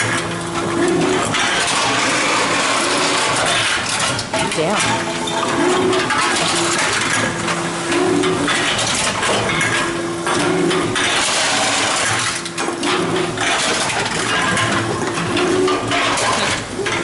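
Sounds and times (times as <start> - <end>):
vending machine motor running: 0.0 - 17.0.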